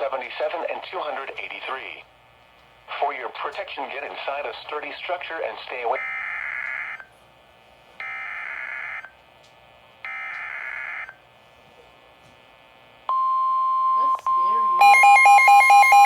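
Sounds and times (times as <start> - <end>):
steady single-pitch alert tone: 13.1 - 16.0.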